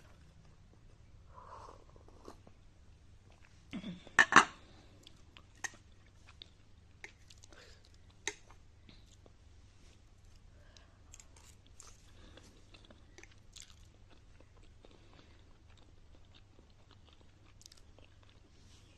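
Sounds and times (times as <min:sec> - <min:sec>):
faint low hum: 0:00.0 - 0:18.9
person chewing: 0:10.2 - 0:18.6.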